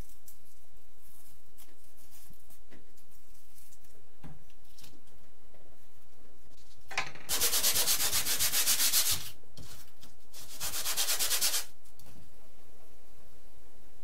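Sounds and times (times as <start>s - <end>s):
sandpaper scratching back and forth: 7.3s - 9.3s, 10.4s - 11.7s.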